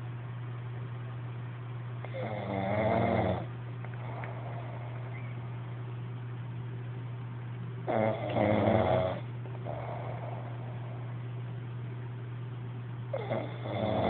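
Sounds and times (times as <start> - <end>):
person snoring: 2.0 - 5.2, 7.9 - 11.2, 13.1 - 14.0
quiet breathing: 3.9 - 5.6, 9.5 - 11.3.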